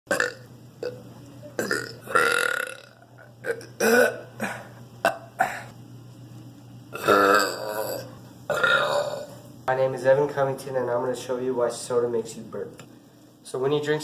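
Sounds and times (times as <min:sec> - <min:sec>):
person burping: 0:00.1 - 0:01.0, 0:01.6 - 0:05.7, 0:06.9 - 0:09.4.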